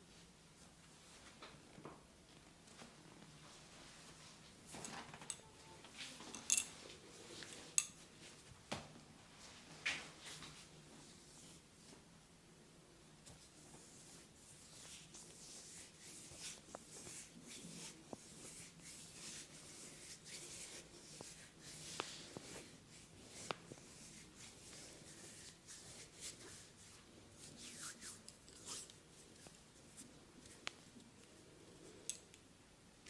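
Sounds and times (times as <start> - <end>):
hands rubbing skin and hair: 13.2 - 32.0.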